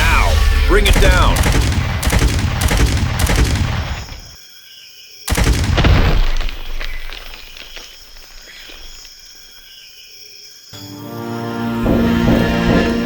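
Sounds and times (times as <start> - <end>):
heavy boom with crackles: 0.0 - 4.4, 5.3 - 8.0.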